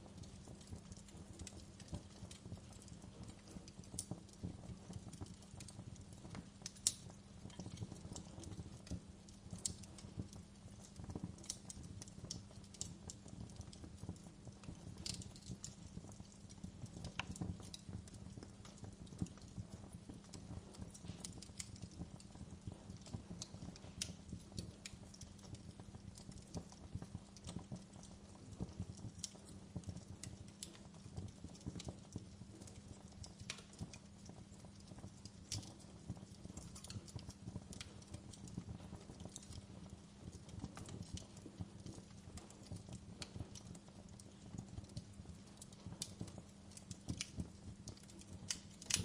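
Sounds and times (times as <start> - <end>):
wood fire crackling: 0.0 - 49.0.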